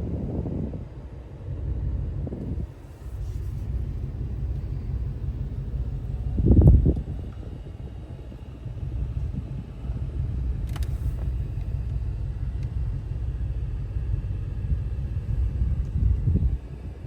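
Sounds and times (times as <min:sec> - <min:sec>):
engine low rumble: 0:00.0 - 0:17.0
faint click: 0:10.6 - 0:11.3.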